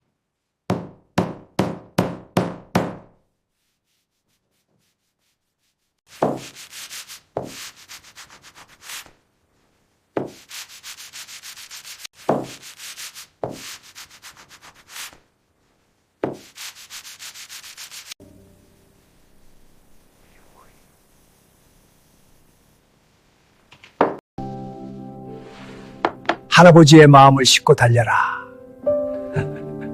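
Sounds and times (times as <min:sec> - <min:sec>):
wooden knocking: 0:26.0 - 0:26.5.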